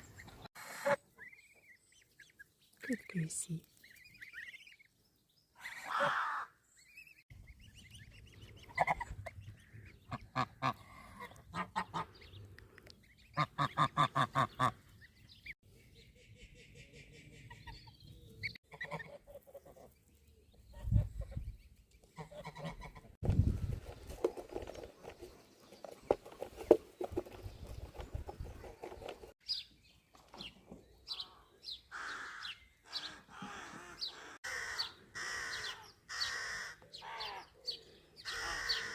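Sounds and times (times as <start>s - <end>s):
geese honking: 5.6s - 6.5s.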